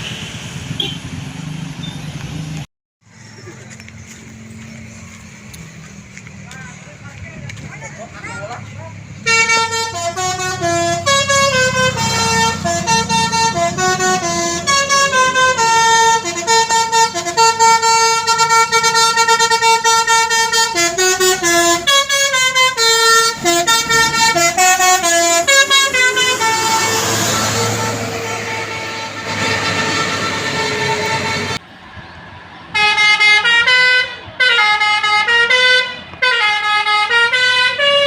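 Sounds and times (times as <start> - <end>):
bus musical horn melody: 9.2 - 31.6, 32.7 - 38.0.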